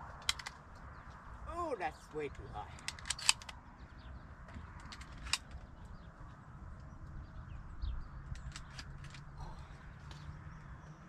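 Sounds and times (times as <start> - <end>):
low wind rumble: 0.0 - 11.0.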